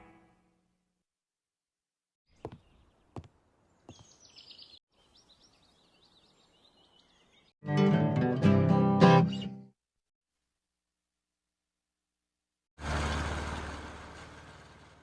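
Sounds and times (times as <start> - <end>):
small birds chirping: 2.3 - 7.6.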